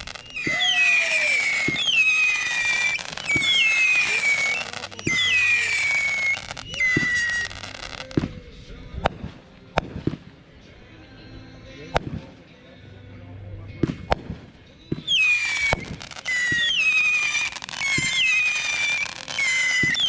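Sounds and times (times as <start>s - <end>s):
firework pops: 0.0s - 8.4s, 9.0s - 10.3s, 13.8s - 20.0s
whistling firework shots: 0.0s - 8.4s, 9.0s - 10.3s, 13.8s - 20.0s
firework bangs: 0.0s - 10.4s, 13.8s - 20.0s.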